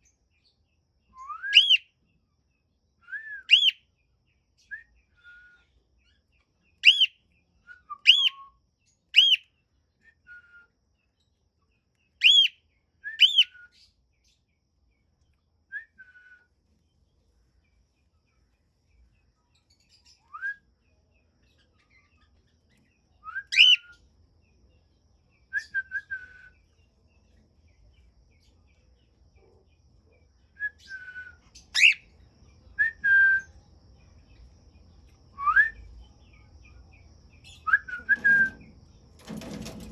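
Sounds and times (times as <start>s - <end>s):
cockatiels whistling calls: 1.2s - 1.8s, 3.4s - 3.8s, 6.8s - 7.1s, 8.0s - 8.4s, 9.2s - 9.4s, 12.2s - 12.5s, 13.2s - 13.5s, 23.4s - 24.0s, 31.8s - 32.0s.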